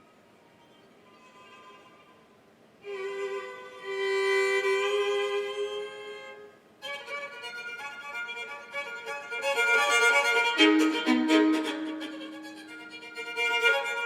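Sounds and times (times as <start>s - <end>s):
bowed solo fiddle: 1.0s - 14.0s.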